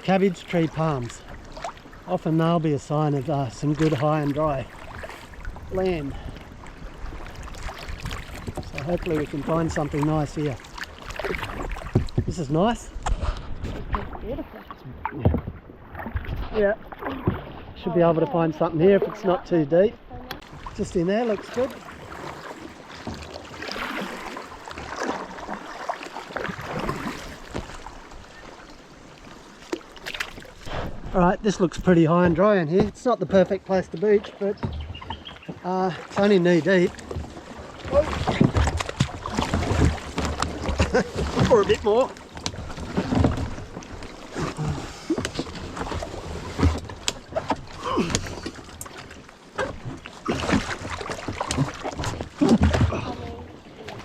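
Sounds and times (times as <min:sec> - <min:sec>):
paddle splashing in water: 0:00.0 - 0:54.0
knocks against kayak hull: 0:11.7 - 0:12.4.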